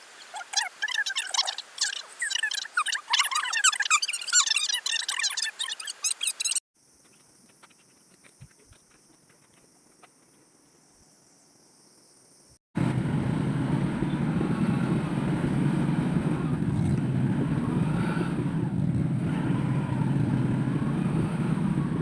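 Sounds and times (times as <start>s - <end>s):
rapid high squeaks: 0.2s - 10.4s
loud low rumbling: 12.8s - 22.0s.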